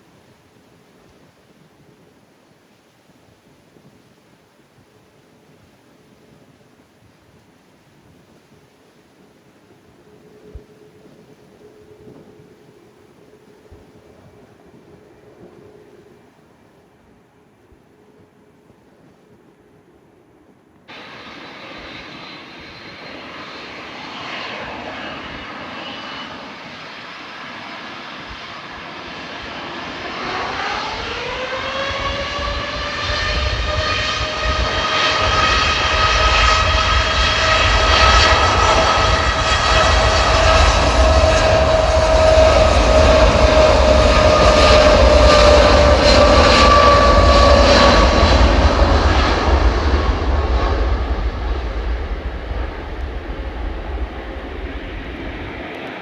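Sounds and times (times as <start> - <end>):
jet engines spooling up: 20.9 - 56.0
rising engine whine: 20.9 - 56.0.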